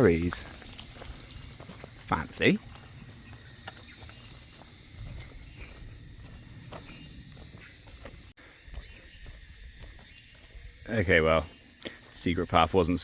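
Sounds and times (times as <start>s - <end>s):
faint footsteps: 0.0s - 10.8s
high insect hiss: 0.0s - 13.0s
wind rumble on microphone: 4.6s - 8.2s.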